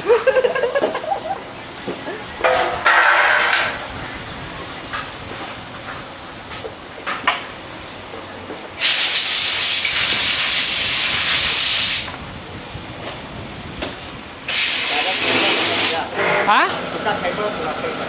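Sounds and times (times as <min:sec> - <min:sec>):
gas hissing under pressure: 0:08.8 - 0:12.2, 0:14.4 - 0:16.1.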